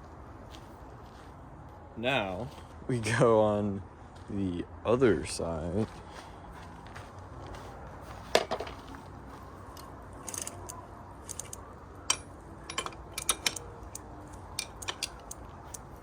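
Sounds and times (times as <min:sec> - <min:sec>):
wrench clicking and knocking on metal: 0:10.2 - 0:15.9.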